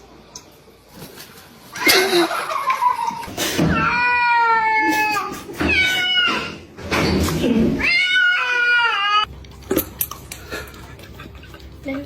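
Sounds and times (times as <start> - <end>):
cat yowling: 3.7 - 6.6, 7.8 - 9.3.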